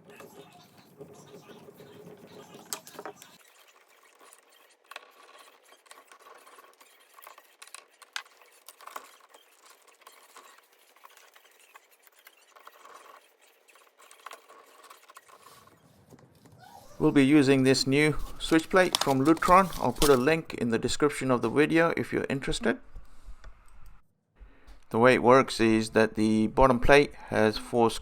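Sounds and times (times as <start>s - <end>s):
wires rustling: 0.0s - 15.7s, 16.9s - 20.7s.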